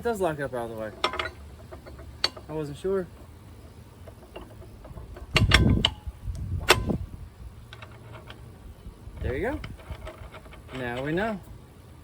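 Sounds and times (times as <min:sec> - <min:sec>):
loud metal clanks: 0:00.9 - 0:02.7.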